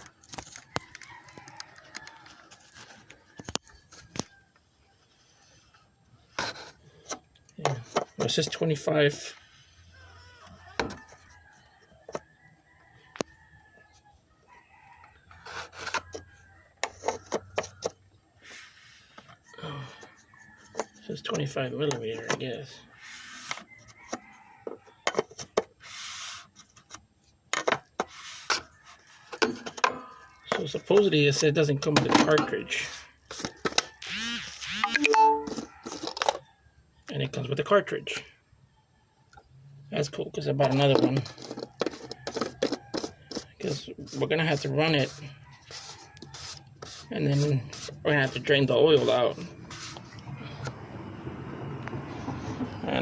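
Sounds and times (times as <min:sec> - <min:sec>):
short rubbing sound: 0:45.0 - 0:48.4, 0:49.0 - 0:50.7.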